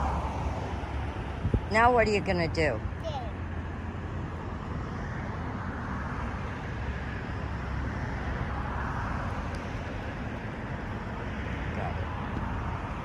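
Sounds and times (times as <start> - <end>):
road traffic rumble: 0.0 - 13.0
vehicle passing: 0.0 - 13.0.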